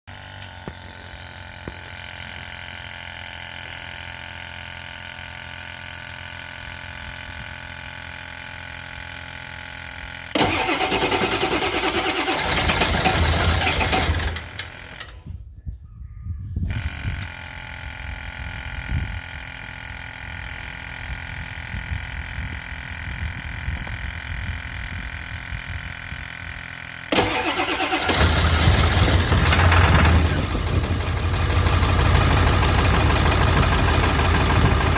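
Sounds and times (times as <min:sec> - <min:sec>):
engine starter cranking: 0:10.3 - 0:15.3, 0:27.1 - 0:30.8.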